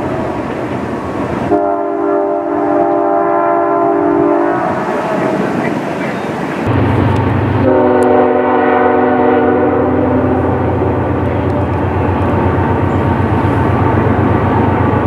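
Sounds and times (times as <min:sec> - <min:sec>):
locomotive rumble: 0:00.0 - 0:15.0
locomotive air horn chord: 0:01.5 - 0:04.8, 0:07.6 - 0:11.0.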